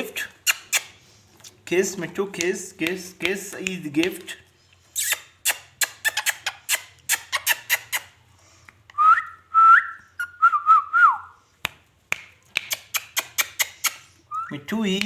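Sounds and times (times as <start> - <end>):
smacking kiss sounds: 0.0 - 1.6, 2.3 - 4.4, 5.0 - 9.0, 11.6 - 15.0.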